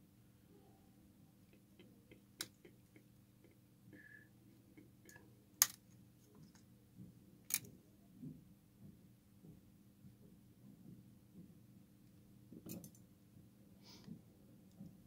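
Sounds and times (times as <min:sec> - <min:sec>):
small tools clicking and tapping: 0:07.5 - 0:07.7.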